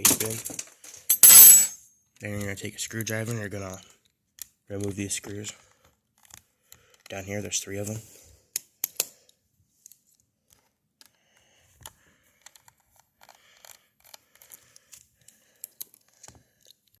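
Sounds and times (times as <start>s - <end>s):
screwdriver clicking and scraping: 6.2s - 7.1s, 11.8s - 17.0s.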